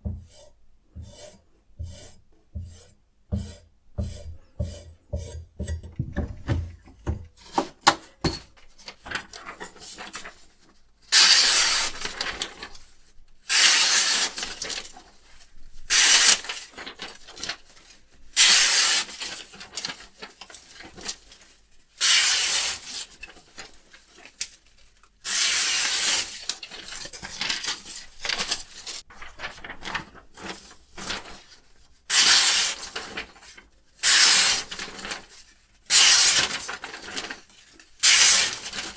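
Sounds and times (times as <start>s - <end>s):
knife blade scraping strokes: 0.2s - 5.8s.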